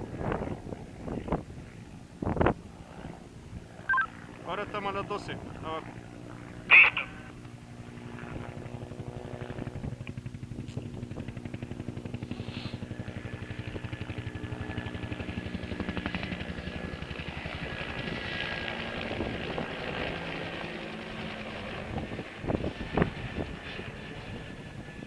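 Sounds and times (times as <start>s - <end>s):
turbine whine: 0.0s - 8.6s
helicopter rotor blades beating: 0.0s - 25.0s.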